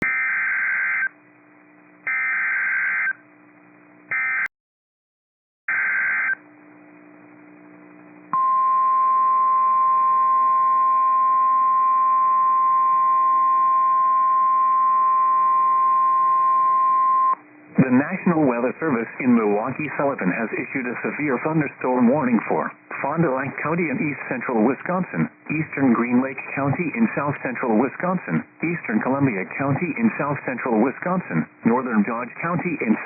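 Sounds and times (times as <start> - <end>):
steady warning alarm tone: 2.1 - 3.2.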